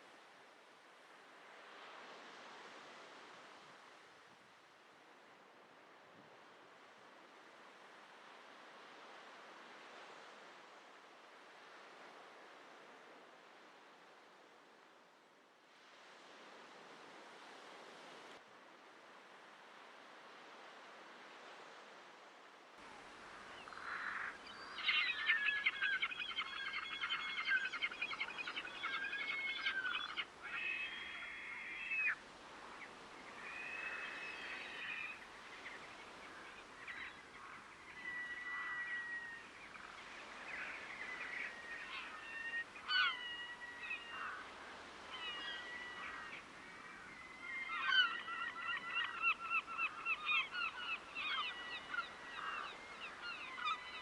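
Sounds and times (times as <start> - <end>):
waterbirds honking: 23.4 - 31.8.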